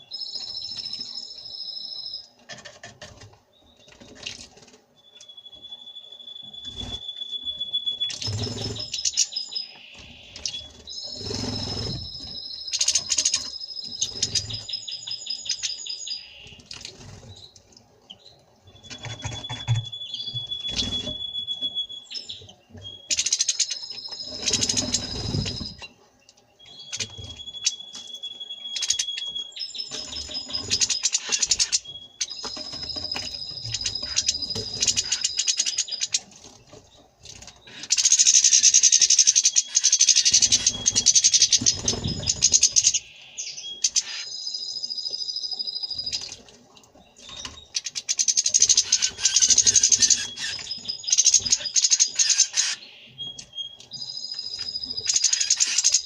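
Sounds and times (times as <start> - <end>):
finches chirping and twittering: 0.0 - 56.0
wings fluttering and splashing: 2.5 - 4.9.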